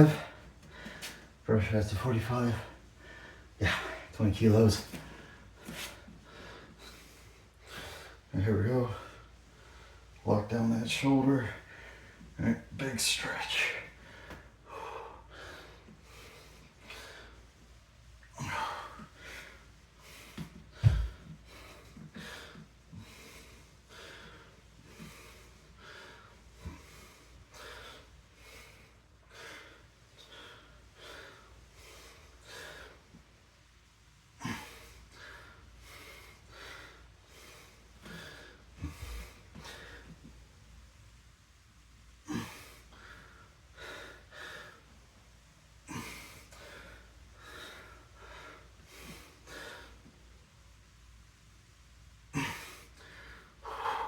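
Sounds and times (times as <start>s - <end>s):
man breathing hard: 0.0s - 1.4s, 2.2s - 4.2s, 4.9s - 8.3s, 13.6s - 17.6s, 18.2s - 33.4s, 34.3s - 40.3s, 42.2s - 45.2s, 45.8s - 50.2s, 52.3s - 54.0s.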